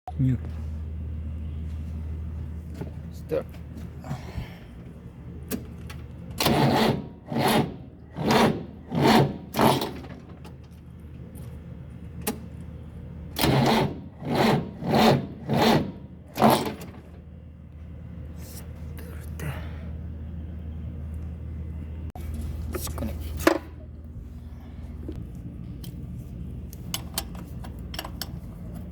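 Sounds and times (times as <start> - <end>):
tractor engine cranking slowly: 13.3 - 17.2.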